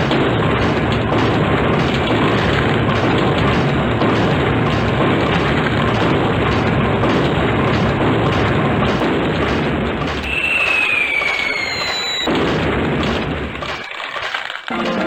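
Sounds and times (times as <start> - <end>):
explosion-like rumble: 0.0 - 13.7
falling whistle-like tone: 10.3 - 12.3.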